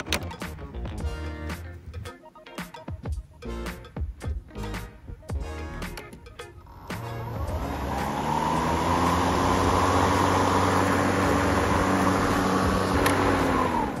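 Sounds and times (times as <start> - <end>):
electric lawn mower running: 6.6 - 14.0.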